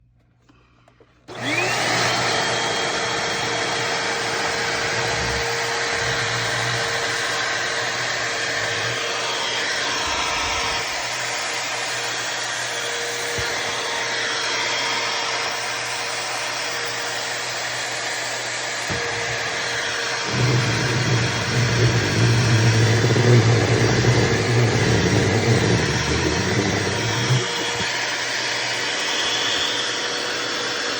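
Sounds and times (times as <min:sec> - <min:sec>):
shirt sucked against vacuum nozzle: 0:01.3 - 0:16.4, 0:18.2 - 0:30.9
vacuum cleaner motor: 0:01.3 - 0:30.9.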